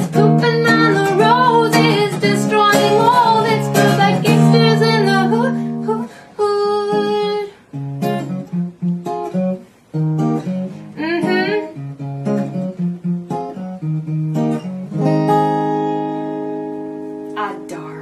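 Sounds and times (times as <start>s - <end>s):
acoustic guitar plucking and strumming: 0.0s - 18.0s.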